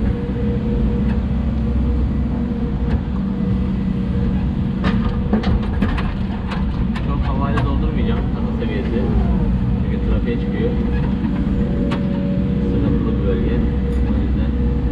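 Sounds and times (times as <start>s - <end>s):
excavator diesel engine running: 0.0s - 14.9s
sharp knocks and clatters: 4.8s - 8.3s.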